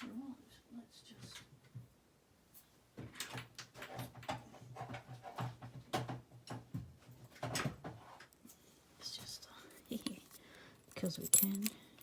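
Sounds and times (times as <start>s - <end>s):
small objects clicking and rustling: 9.8s - 12.0s.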